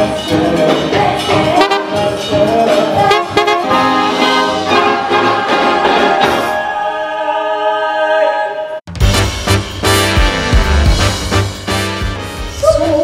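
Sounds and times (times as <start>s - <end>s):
brass section playing: 1.5s - 2.3s, 3.0s - 7.0s, 8.9s - 13.0s.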